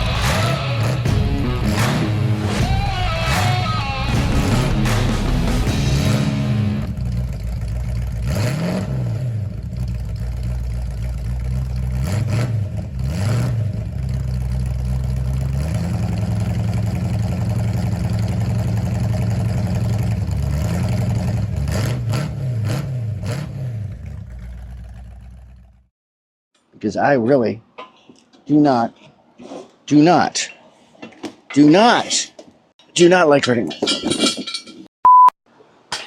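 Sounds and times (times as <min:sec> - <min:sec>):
car engine idling and revving: 0:00.0 - 0:25.9.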